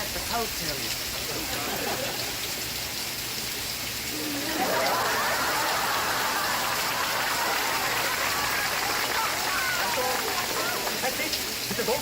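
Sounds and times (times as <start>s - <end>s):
steady rain: 0.0s - 12.0s
studio audience laughter: 1.3s - 2.6s, 4.2s - 12.0s.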